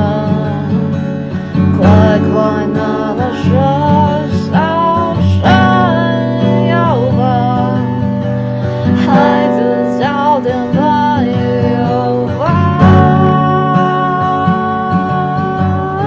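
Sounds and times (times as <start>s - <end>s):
person singing: 0.0s - 16.0s
strummed acoustic guitar: 0.0s - 16.0s.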